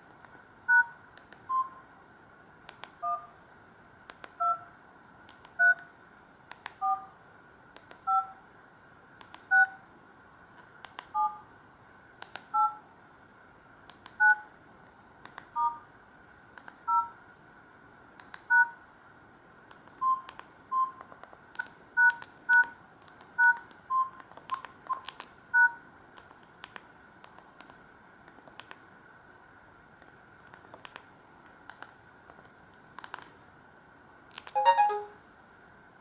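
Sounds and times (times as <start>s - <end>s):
phone keypad beeps: 3.0s - 3.3s, 4.4s - 4.7s, 5.6s - 5.9s, 6.8s - 7.1s, 14.2s - 14.4s, 34.6s - 35.2s.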